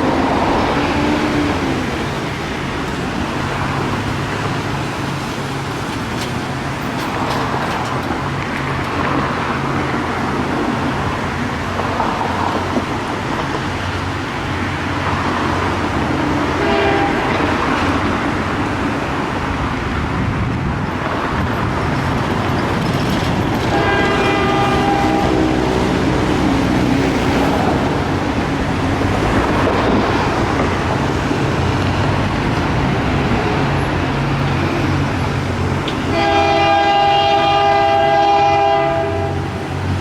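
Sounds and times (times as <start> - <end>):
diesel locomotive passing: 0.0 - 40.0
train rumble: 0.0 - 40.0
train horn: 16.3 - 18.0, 23.6 - 26.7, 36.0 - 39.8.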